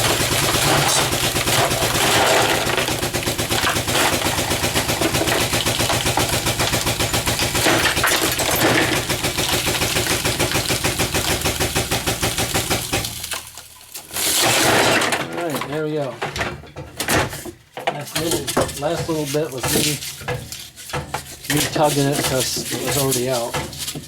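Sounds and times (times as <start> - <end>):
powered ram clattering: 0.0 - 13.6.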